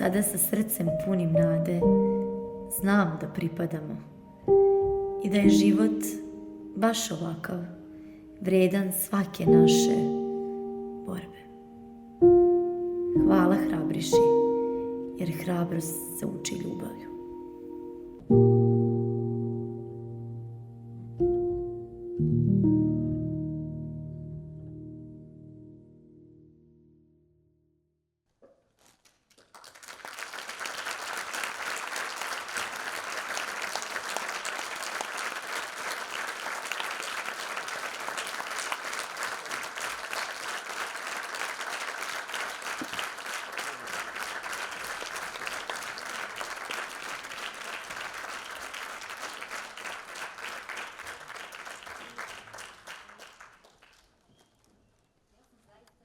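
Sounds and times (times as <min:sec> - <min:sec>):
music: 0:00.0 - 0:27.9, 0:31.7 - 0:52.7
audience applauding: 0:28.7 - 0:54.7.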